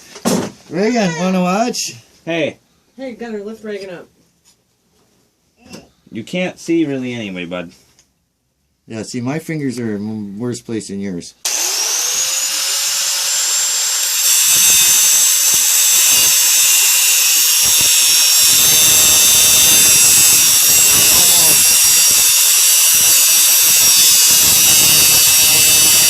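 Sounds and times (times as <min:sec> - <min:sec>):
cutting wheel grinding metal: 0:11.5 - 0:26.0.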